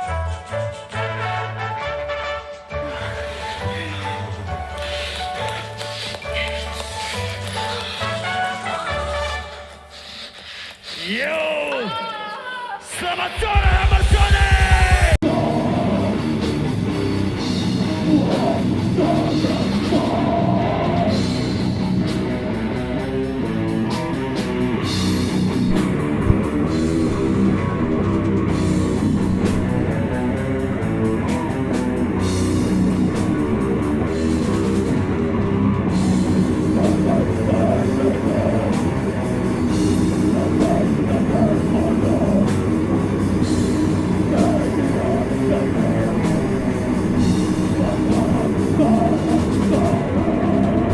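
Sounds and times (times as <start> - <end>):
death metal band playing live: 13.5 - 50.9.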